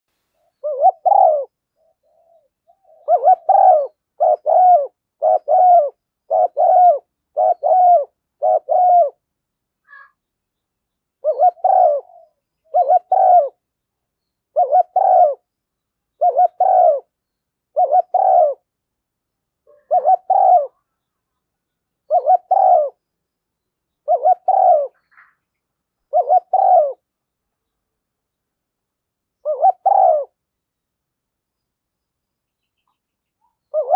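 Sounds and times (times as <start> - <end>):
dove cooing: 0.6 - 9.2, 11.2 - 13.6, 14.5 - 15.5, 16.2 - 18.7, 19.6 - 20.9, 22.1 - 23.0, 24.0 - 25.4, 26.1 - 27.1, 29.4 - 30.4, 33.6 - 33.9.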